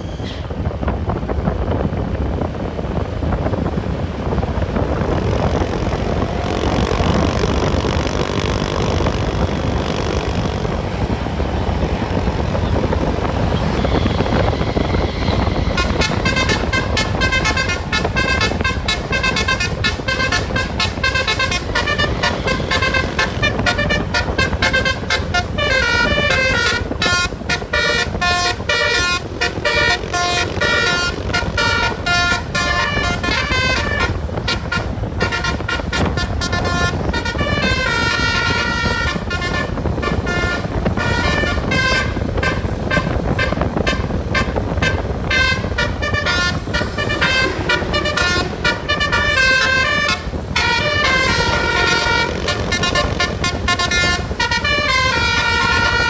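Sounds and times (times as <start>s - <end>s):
road noise: 0.0s - 56.0s
wind noise: 0.0s - 56.0s
multi-tone air horn tune: 4.3s - 56.0s.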